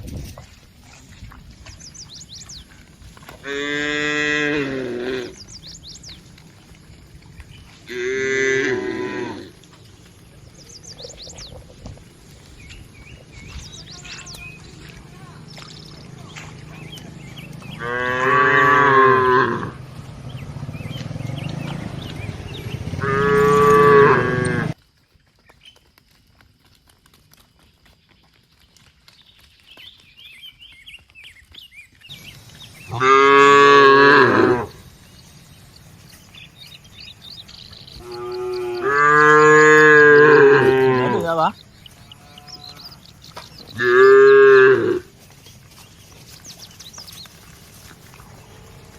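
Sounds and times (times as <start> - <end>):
cattle mooing: 3.4 - 5.5, 7.8 - 9.6, 16.1 - 24.8, 32.9 - 34.9, 37.8 - 45.1, 47.8 - 48.9.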